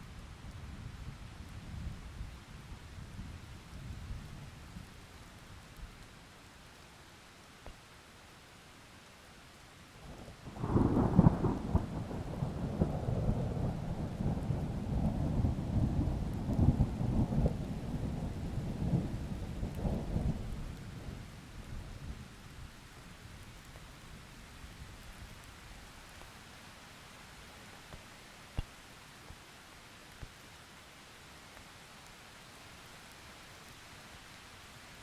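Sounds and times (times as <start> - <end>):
steady rain: 0.0 - 35.0
thunder rumbling: 10.5 - 21.3.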